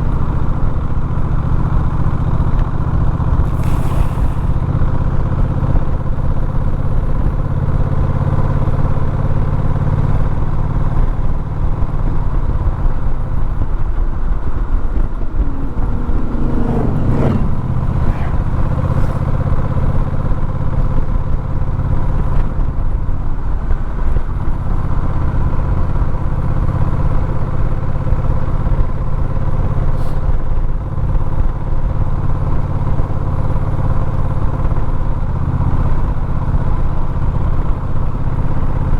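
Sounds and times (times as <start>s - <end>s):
road noise: 0.0s - 38.9s
vehicle engine running: 0.0s - 38.9s
rising whine: 14.4s - 20.4s.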